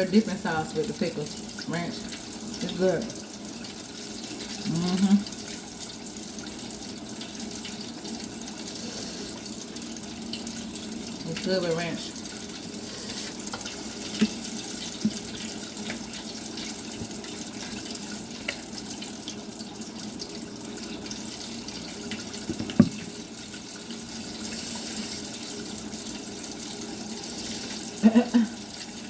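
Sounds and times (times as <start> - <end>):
tap running into sink: 22.1 - 23.3
dishes knocking: 22.5 - 23.1.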